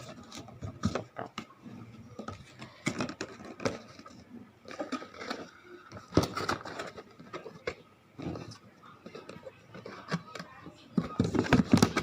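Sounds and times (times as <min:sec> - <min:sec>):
packaging handling clicks and knocks: 0:11.0 - 0:12.0.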